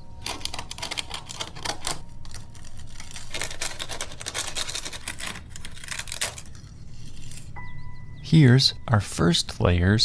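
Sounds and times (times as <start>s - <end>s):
papery wasp nest crackling: 0.2s - 7.6s.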